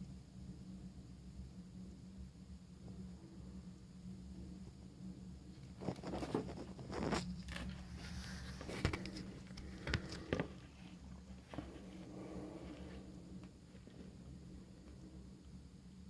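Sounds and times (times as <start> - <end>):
low steady hum: 0.0 - 16.0
rustling: 5.7 - 15.0.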